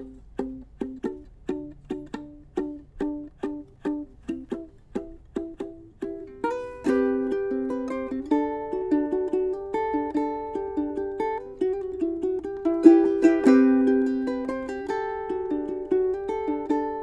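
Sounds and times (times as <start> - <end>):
ukulele chord strummed: 0.0 - 17.0
ukulele fingerpicked notes: 0.0 - 17.0.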